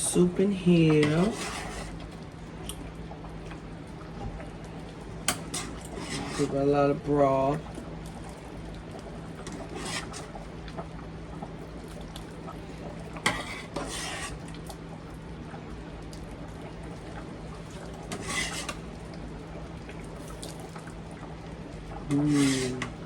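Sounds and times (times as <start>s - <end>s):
ladle clinking and scraping in pot: 1.0s - 1.9s, 5.3s - 6.6s, 13.3s - 14.4s, 18.1s - 18.8s, 22.1s - 22.9s.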